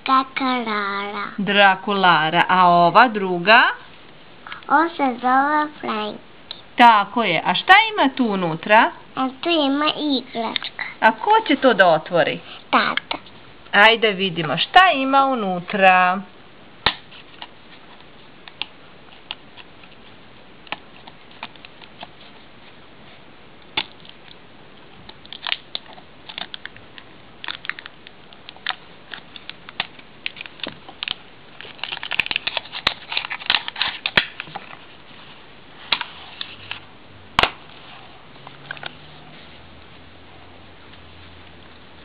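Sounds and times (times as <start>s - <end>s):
sharp plastic snap: 16.8s - 17.1s, 32.0s - 34.6s, 37.4s - 37.6s
package clicks and crinkling: 25.1s - 34.8s.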